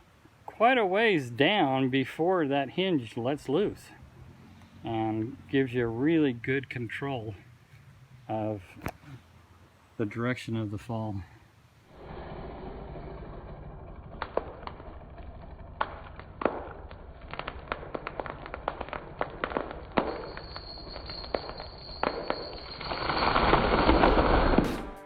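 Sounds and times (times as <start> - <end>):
tree crashing down: 13.9 - 24.9
wood cracking and snapping: 14.0 - 20.5.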